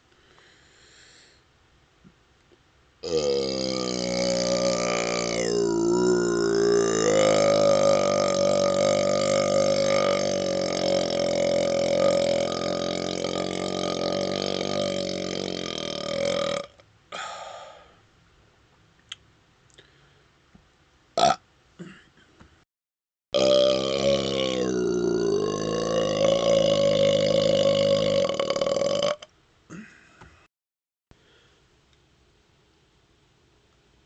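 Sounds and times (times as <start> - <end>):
man burping: 3.0 - 17.7, 21.2 - 22.2, 23.4 - 30.3.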